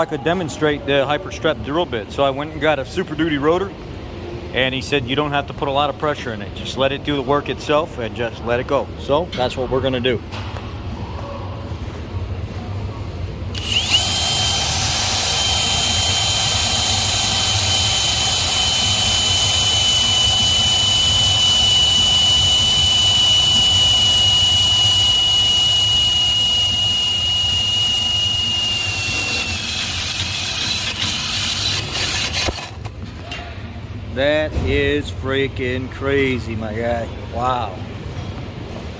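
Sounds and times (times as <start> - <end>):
drill bit squealing through metal: 13.6 - 32.7.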